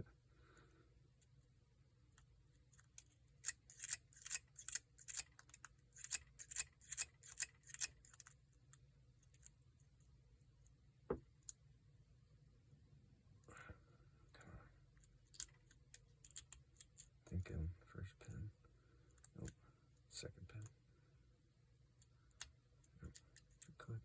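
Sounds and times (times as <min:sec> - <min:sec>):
lock pick clicking and scraping: 0:02.7 - 0:08.4, 0:15.3 - 0:17.1, 0:23.1 - 0:23.7.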